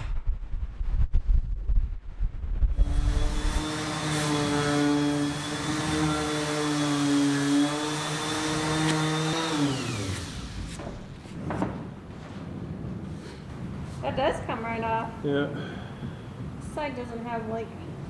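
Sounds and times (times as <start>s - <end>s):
small electric motor spinning: 2.8s - 11.1s.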